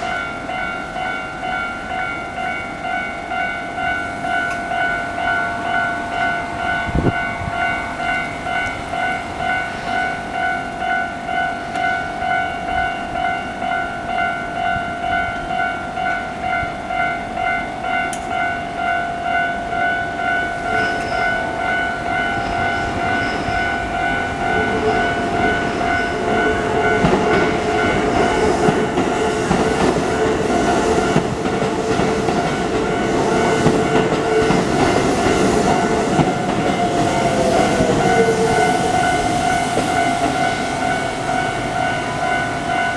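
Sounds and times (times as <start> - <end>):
level crossing alarm ringing: 0.0 - 42.9
train wheels clattering: 20.6 - 42.9
train motor hum: 23.8 - 42.8.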